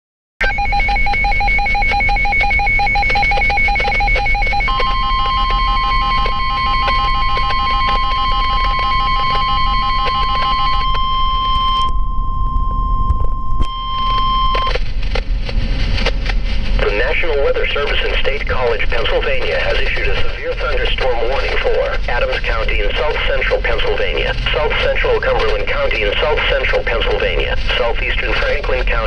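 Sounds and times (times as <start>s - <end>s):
fast-pulsing electronic beep: 0.4s - 14.8s
steady warning alarm tone: 0.4s - 14.8s.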